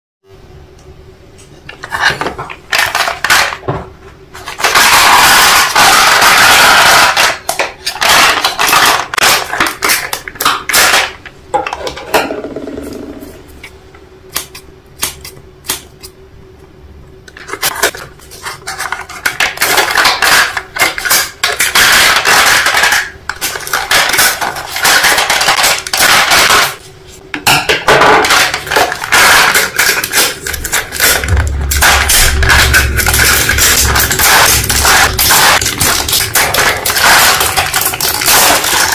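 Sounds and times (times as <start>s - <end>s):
small hard objects rattling: 28.2s - 38.9s.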